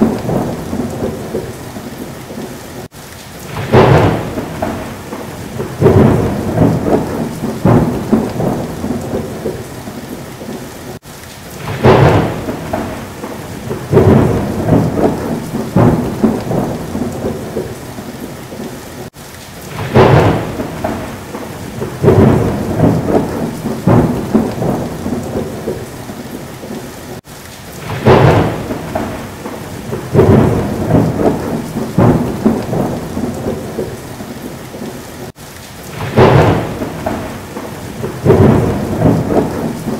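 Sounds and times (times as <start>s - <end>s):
loud thunder clap: 0.0s - 2.5s, 3.4s - 10.6s, 11.6s - 18.7s, 19.7s - 26.1s, 27.8s - 34.9s, 35.9s - 39.9s
rolling thunder: 0.0s - 39.9s
steady rain: 0.0s - 39.9s.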